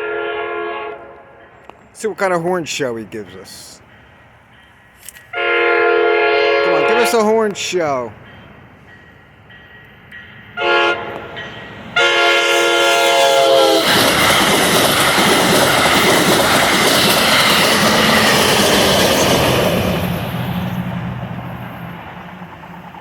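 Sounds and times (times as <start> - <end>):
train horn: 0.0 - 1.4, 5.3 - 7.5, 10.6 - 14.2
train wheels rushing on rail: 0.8 - 23.0.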